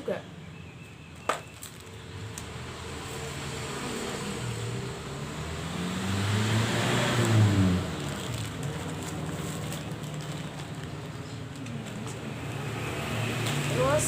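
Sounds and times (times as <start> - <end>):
vehicle engine passing by: 2.2 - 11.4, 12.0 - 14.0.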